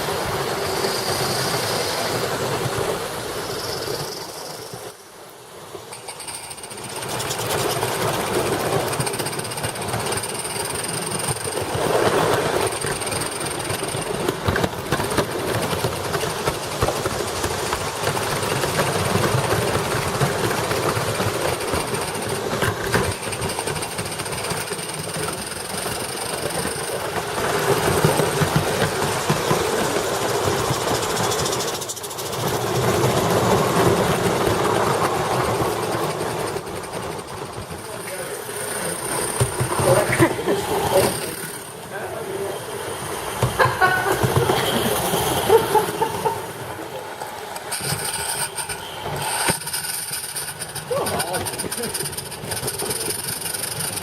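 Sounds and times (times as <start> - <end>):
train rattling: 0.0 - 54.0.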